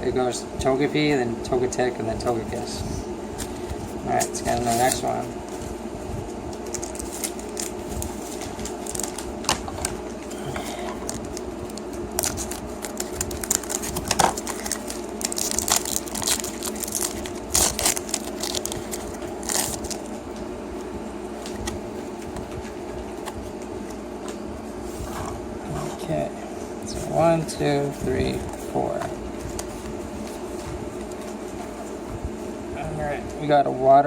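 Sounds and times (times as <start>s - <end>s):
foil wrapper crinkling and tearing: 6.5s - 10.0s, 10.6s - 20.2s.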